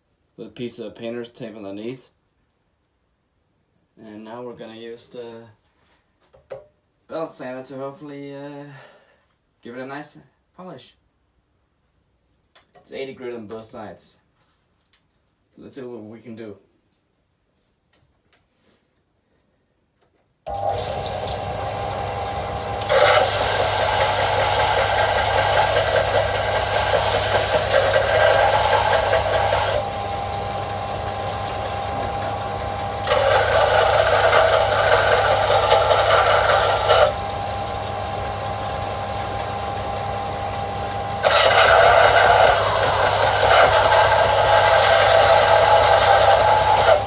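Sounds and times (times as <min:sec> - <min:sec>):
harsh grinding of steel blade: 0:20.5 - 0:37.5, 0:40.8 - 0:47.0
belt sander running: 0:20.5 - 0:47.0.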